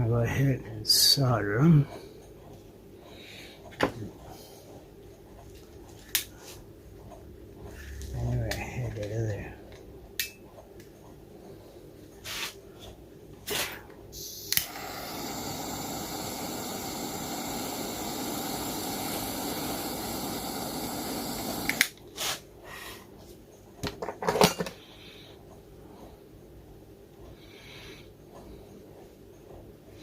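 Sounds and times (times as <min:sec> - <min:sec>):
rushing hiss of soldering tool: 0:14.2 - 0:22.4.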